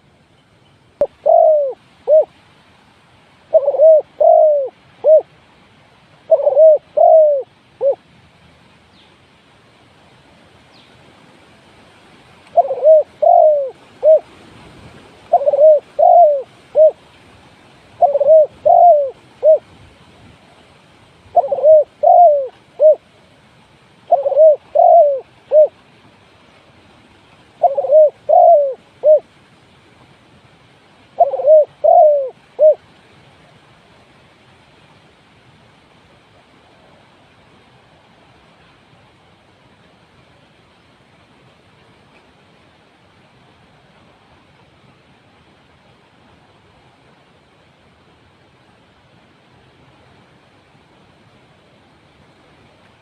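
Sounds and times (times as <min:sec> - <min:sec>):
dove cooing: 0:01.0 - 0:02.4, 0:03.5 - 0:05.3, 0:06.3 - 0:08.0, 0:12.5 - 0:14.3, 0:15.2 - 0:17.0, 0:18.0 - 0:19.7, 0:21.3 - 0:23.1, 0:24.1 - 0:25.8, 0:27.6 - 0:29.3, 0:31.2 - 0:32.8.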